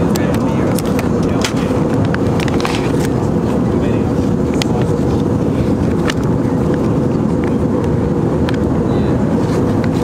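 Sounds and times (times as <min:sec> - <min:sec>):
jet cabin engine and airflow noise: 0:00.0 - 0:10.0.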